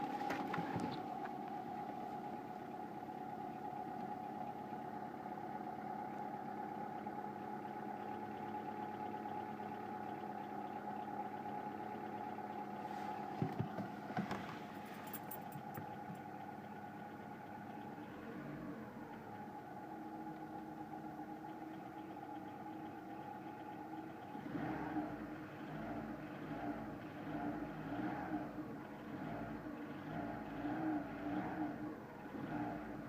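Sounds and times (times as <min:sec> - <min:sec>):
car engine idling with rattling: 0:00.0 - 0:33.0.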